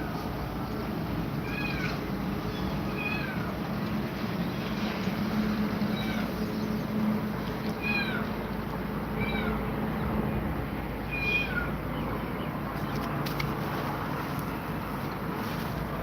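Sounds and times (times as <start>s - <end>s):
cat meowing: 1.4s - 2.0s, 7.8s - 8.3s, 9.2s - 9.6s, 11.1s - 11.7s.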